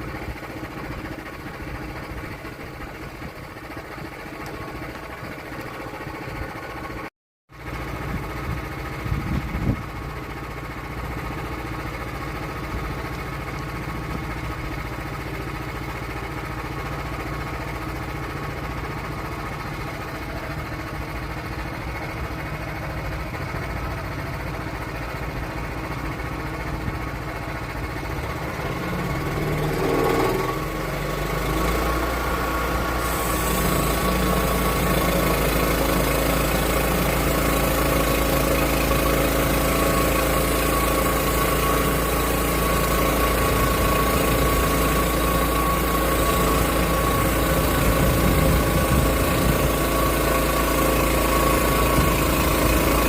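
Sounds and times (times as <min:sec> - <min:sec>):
sawmill engine running: 0:00.0 - 0:53.0.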